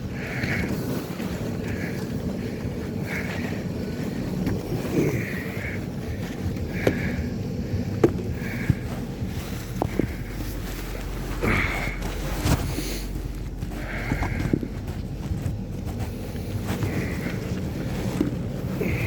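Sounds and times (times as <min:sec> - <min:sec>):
heavy breathing: 0:00.0 - 0:19.0
shovel scraping through snow: 0:09.2 - 0:19.0.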